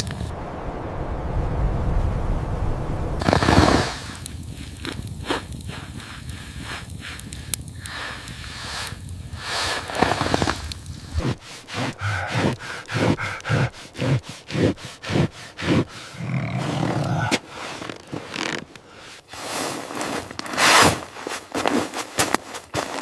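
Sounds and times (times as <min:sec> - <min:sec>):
footsteps crunching through snow: 0:03.2 - 0:06.8, 0:09.3 - 0:13.6, 0:19.3 - 0:23.0.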